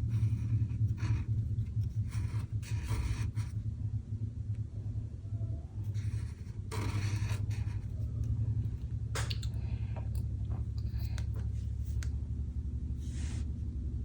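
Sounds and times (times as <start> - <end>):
pen scratching on paper: 0.0 - 3.6, 5.8 - 8.1
steady low hum: 0.0 - 14.0.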